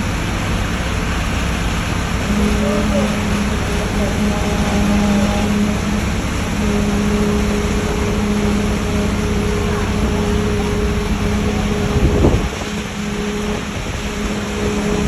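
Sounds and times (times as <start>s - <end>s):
concrete-pouring machinery humming: 0.0s - 15.0s.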